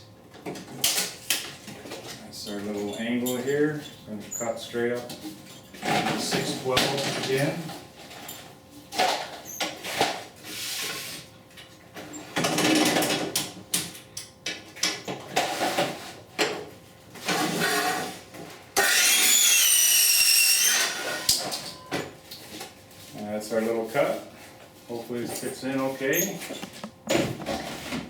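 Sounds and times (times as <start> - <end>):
power saw cutting: 18.8 - 21.3
vinyl siding rustling and knocking: 26.4 - 28.0.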